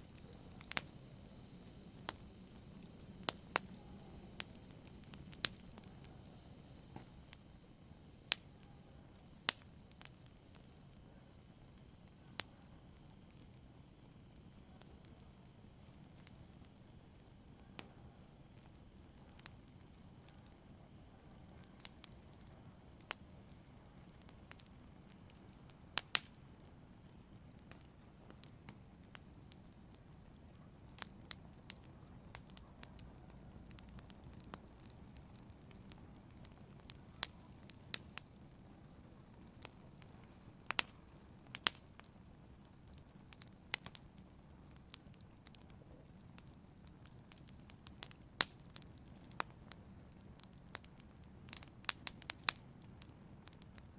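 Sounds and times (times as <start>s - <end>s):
fire crackling in a fireplace: 0.0s - 53.9s.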